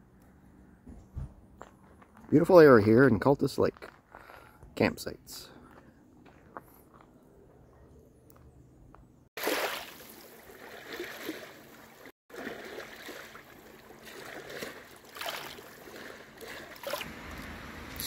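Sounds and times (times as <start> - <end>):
small waves lapping: 9.4 - 18.0.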